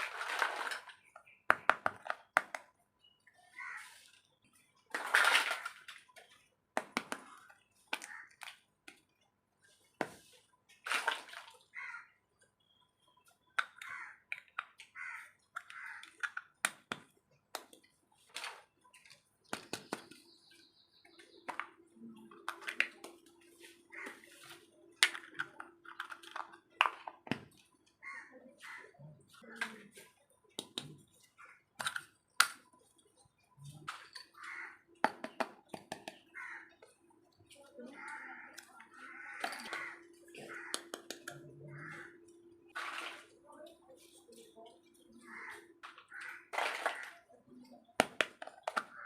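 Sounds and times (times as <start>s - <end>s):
water splashing and sloshing: 0.0s - 1.1s, 3.3s - 12.4s, 20.1s - 28.0s, 36.6s - 47.7s
toy kitchen pieces clicking: 13.4s - 17.9s, 24.9s - 27.7s, 30.6s - 33.0s, 38.1s - 41.5s, 48.0s - 49.0s.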